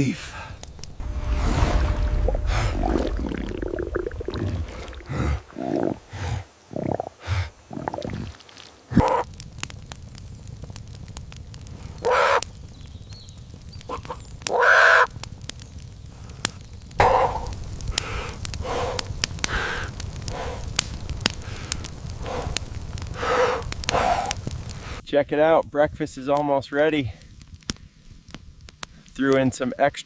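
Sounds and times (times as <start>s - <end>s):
crows cawing: 14.5s - 15.1s.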